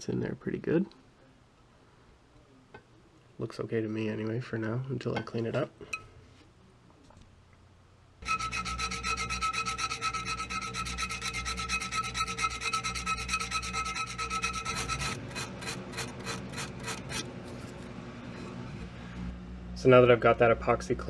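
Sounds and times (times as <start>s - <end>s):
rubbing putty on metal: 8.2s - 17.8s.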